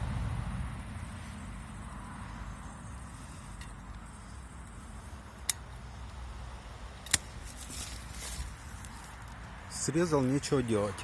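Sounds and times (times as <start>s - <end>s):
low steady rumble: 0.0s - 9.5s
pruning shears click: 5.4s - 5.8s, 7.0s - 7.9s
pruning shears snapping branch: 7.0s - 9.3s.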